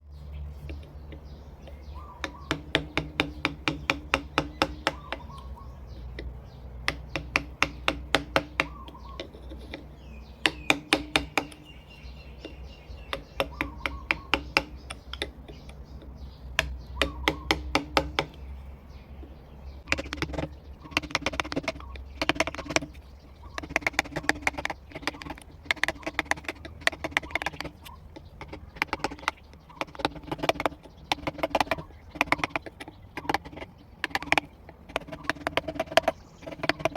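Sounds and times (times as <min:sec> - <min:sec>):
mallet tapping chisel into wood: 0:01.1 - 0:18.5, 0:28.4 - 0:36.9.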